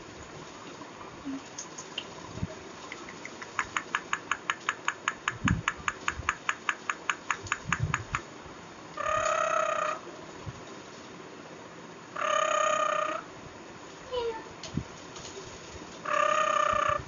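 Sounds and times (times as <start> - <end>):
parrot clicking chirps: 2.9 - 8.3
parrot drawn-out call: 9.0 - 10.0, 12.2 - 13.3, 16.0 - 17.0.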